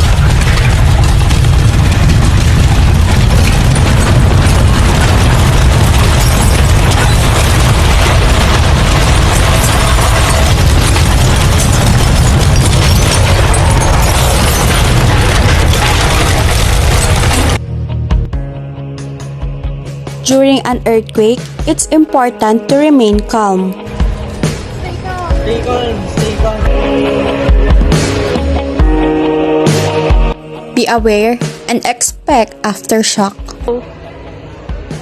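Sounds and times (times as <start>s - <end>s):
crackling and clattering: 0.0s - 17.6s
deep earthquake rumble: 0.0s - 18.2s.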